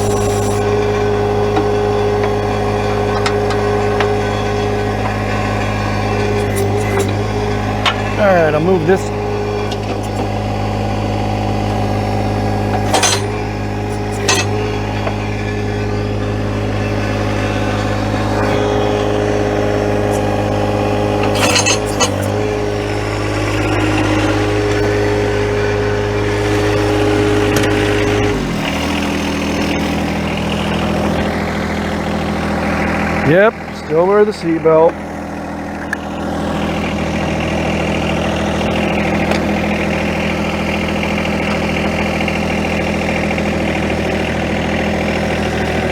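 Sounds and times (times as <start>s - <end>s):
sharp metallic clinks: 0.0s - 0.9s, 6.2s - 10.5s, 12.7s - 15.0s, 21.2s - 22.5s
tractor diesel engine running: 0.0s - 45.9s.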